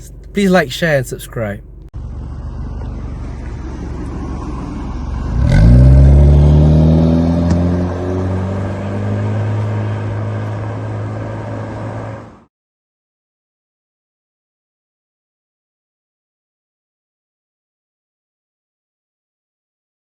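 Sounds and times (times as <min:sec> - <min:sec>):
car accelerating: 0:00.0 - 0:12.4
car engine rumble: 0:00.0 - 0:12.5.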